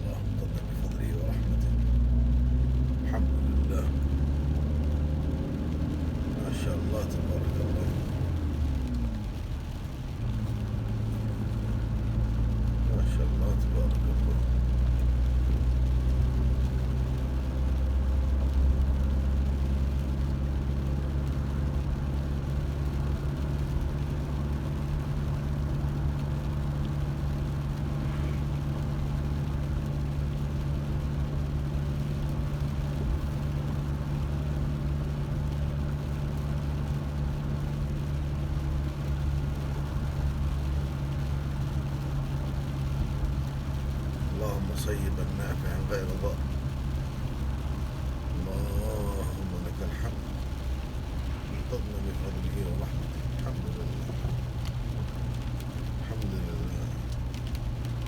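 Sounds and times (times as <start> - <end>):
car engine and road noise: 0.0 - 58.0.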